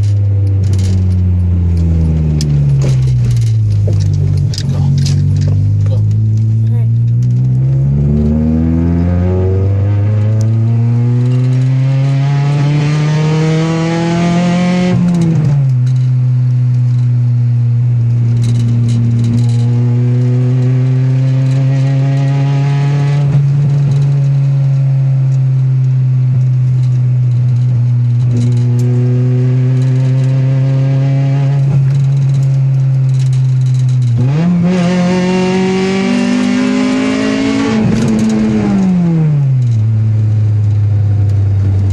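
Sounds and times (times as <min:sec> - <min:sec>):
misfiring engine revving: 0:00.0 - 0:16.1, 0:27.6 - 0:41.9.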